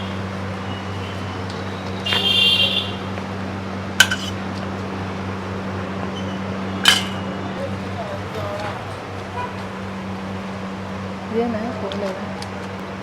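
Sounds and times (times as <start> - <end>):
metal utensils clinking: 4.0 - 4.4, 6.8 - 7.2.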